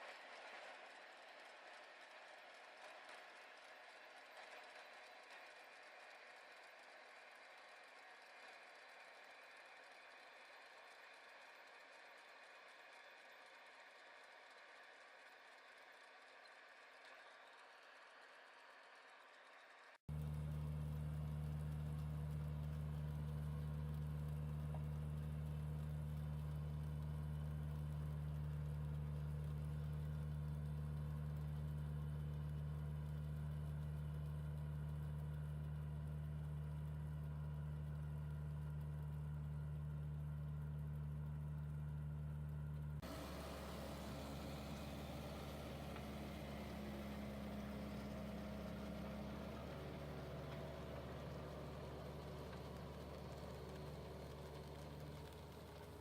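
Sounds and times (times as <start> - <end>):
tractor engine running: 20.1 - 56.0.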